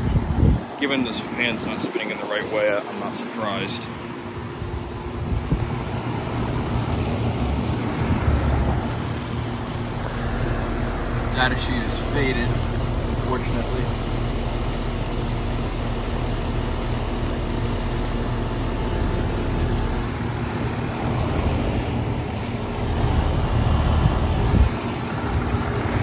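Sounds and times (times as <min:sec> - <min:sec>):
wind buffeting microphone: 0:00.0 - 0:02.2, 0:04.3 - 0:11.5, 0:19.5 - 0:26.0
heat pump humming: 0:00.0 - 0:26.0.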